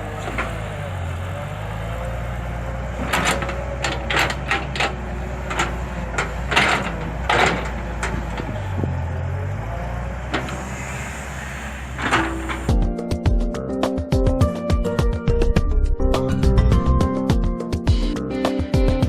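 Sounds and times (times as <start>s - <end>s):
engine running steadily: 0.0s - 13.6s.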